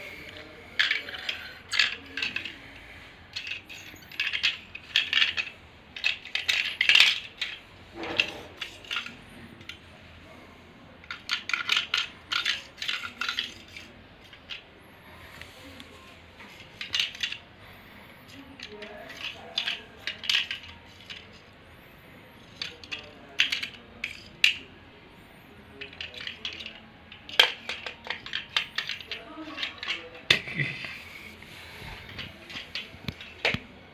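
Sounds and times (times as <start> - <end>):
small hard object clattering: 0.8 - 2.6, 3.3 - 9.8, 11.0 - 14.6, 16.5 - 17.4, 18.3 - 21.4, 25.8 - 30.6.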